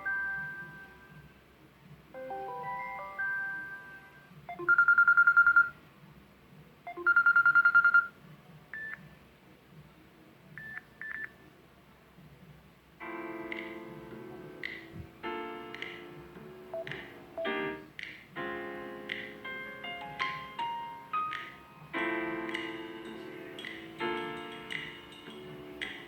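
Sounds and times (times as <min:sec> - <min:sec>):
full ringtone: 0:00.0 - 0:01.2, 0:02.2 - 0:05.7, 0:06.9 - 0:08.1
melodic phone chime: 0:00.0 - 0:01.2, 0:02.2 - 0:05.7, 0:07.0 - 0:08.1.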